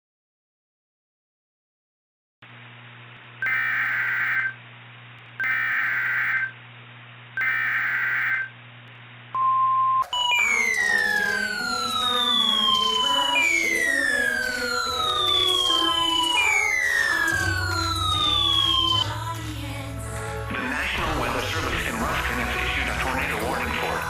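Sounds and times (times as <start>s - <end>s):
radio hiss and hum: 2.5s - 24.0s
warbling data tones: 3.4s - 4.6s, 5.4s - 6.6s, 7.4s - 8.5s, 10.0s - 19.2s
steady alert tone: 5.4s - 6.5s, 7.4s - 8.5s, 10.0s - 19.1s
falling siren-like wail: 10.1s - 19.1s.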